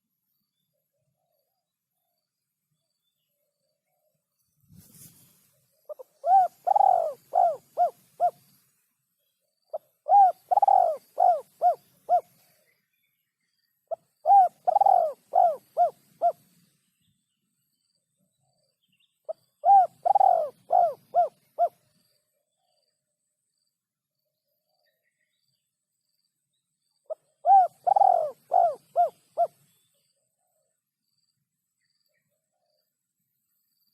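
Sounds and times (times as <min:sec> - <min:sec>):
dove cooing: 0:05.9 - 0:08.5, 0:09.7 - 0:12.4, 0:13.9 - 0:16.4, 0:19.3 - 0:21.8, 0:27.1 - 0:29.6.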